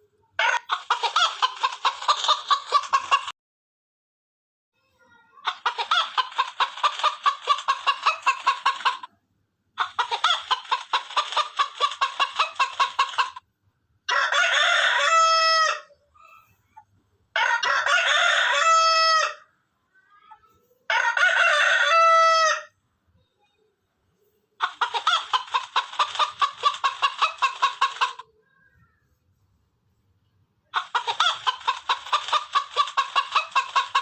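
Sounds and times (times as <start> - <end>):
chicken clucking: 0.4 - 3.3, 5.4 - 9.2, 9.8 - 13.4, 20.9 - 28.4, 30.6 - 34.0
rooster crowing: 14.1 - 15.9, 17.4 - 19.4, 20.9 - 22.7.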